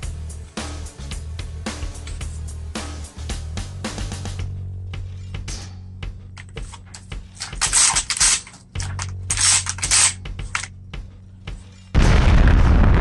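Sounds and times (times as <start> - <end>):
background music: 0.0 - 13.0
shotgun action clicking: 6.4 - 10.7
loud boom: 12.0 - 13.0.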